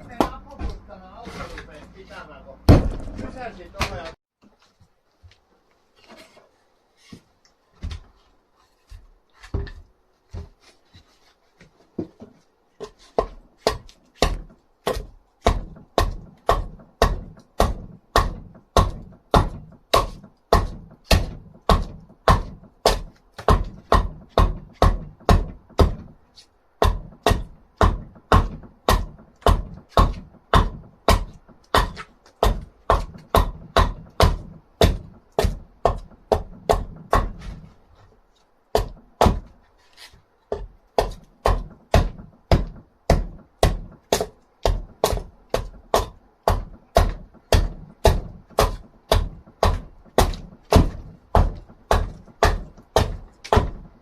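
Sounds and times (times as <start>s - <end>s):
tool striking dried wood: 12.8s - 26.2s, 26.8s - 37.7s, 38.7s - 54.0s.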